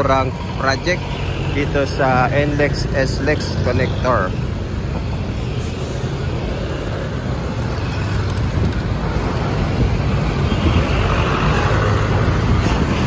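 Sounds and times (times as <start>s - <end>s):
passing cars rumble: 0.0s - 13.0s.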